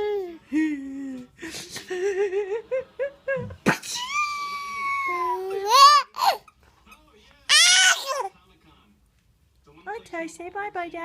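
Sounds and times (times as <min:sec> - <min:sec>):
baby laughing: 0:04.1 - 0:06.5, 0:07.5 - 0:08.3
baby squealing: 0:04.2 - 0:06.5, 0:07.5 - 0:08.3.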